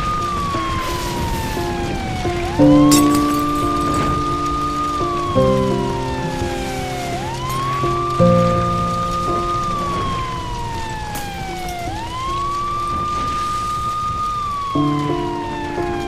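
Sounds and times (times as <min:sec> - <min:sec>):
music with low chords: 0:00.0 - 0:16.0
siren wailing: 0:00.0 - 0:16.0.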